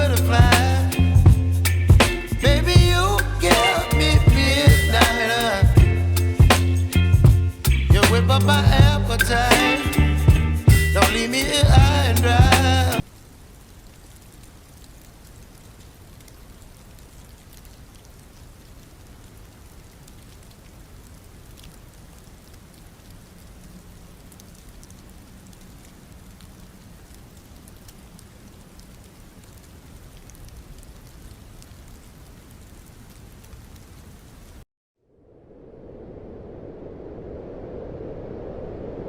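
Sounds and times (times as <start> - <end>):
light rain pattering: 13.0 - 34.7.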